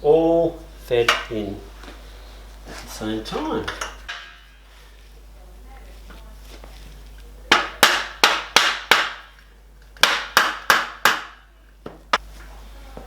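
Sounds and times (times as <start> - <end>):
hammer striking aluminium: 3.7 - 4.6, 7.5 - 9.4, 10.0 - 11.4.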